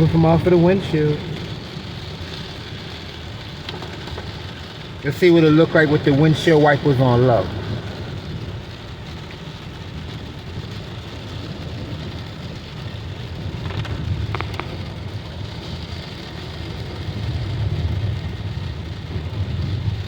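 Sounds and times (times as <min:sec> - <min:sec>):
rain on car: 0:00.0 - 0:20.0
road noise inside car: 0:00.0 - 0:20.0
windshield wipers: 0:01.3 - 0:08.6, 0:13.6 - 0:16.0.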